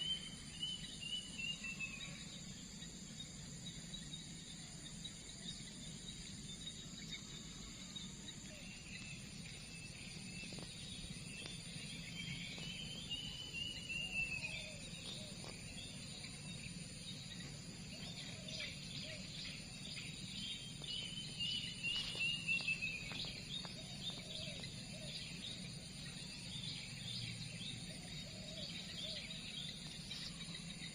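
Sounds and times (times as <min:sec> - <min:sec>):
high insect drone: 0:00.0 - 0:30.9
birds chirping: 0:05.7 - 0:30.9.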